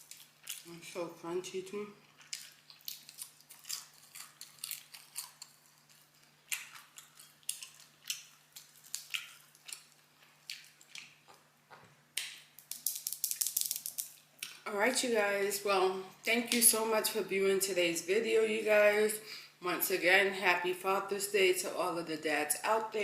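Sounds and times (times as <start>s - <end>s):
crunchy chewing: 0.0s - 0.8s, 2.0s - 11.5s.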